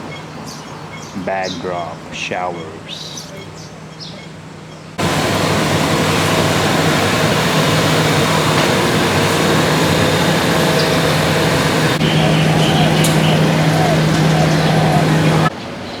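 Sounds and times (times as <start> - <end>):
loud mechanical hum: 5.0 - 16.0.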